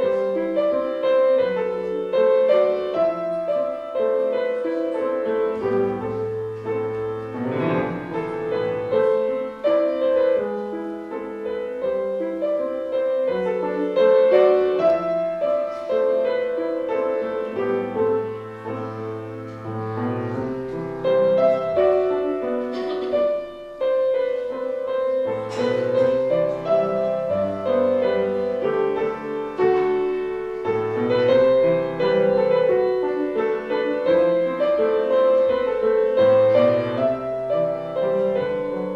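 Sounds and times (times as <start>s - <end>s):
piano chords over bass line: 0.0s - 38.9s.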